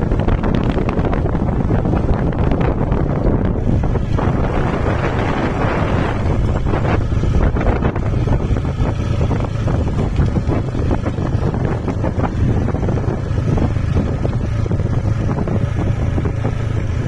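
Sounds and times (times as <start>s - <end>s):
vehicle engine running: 0.0s - 17.0s
wind buffeting microphone: 0.0s - 17.0s.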